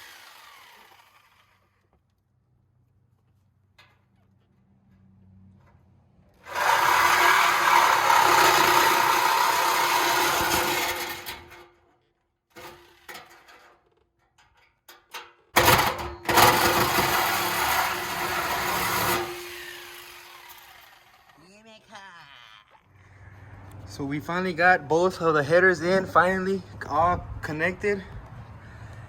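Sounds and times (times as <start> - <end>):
power tool cutting steel pipe: 0.0 - 1.7, 6.4 - 11.7, 15.6 - 21.4.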